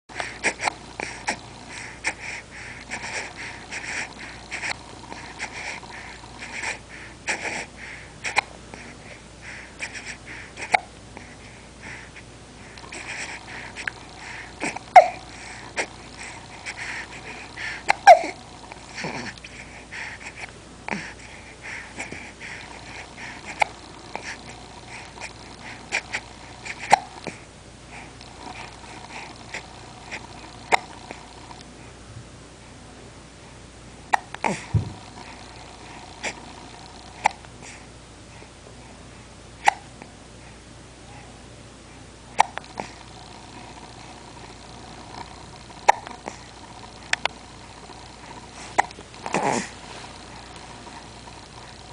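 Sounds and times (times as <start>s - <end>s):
person hiccuping: 14.6s - 15.2s, 17.9s - 18.4s, 26.7s - 27.2s, 34.1s - 34.6s, 39.6s - 39.9s, 42.4s - 42.6s, 45.8s - 46.2s.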